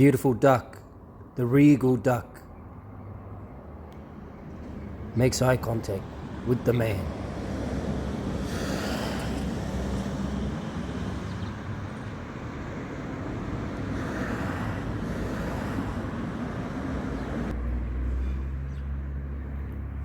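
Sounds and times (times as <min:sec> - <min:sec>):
road traffic tyre and engine noise: 0:00.0 - 0:20.0
car passing: 0:02.6 - 0:20.0.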